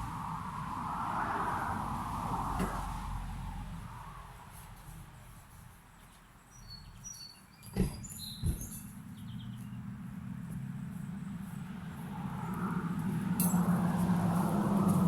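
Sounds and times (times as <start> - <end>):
small birds chirping: 5.2 - 12.6.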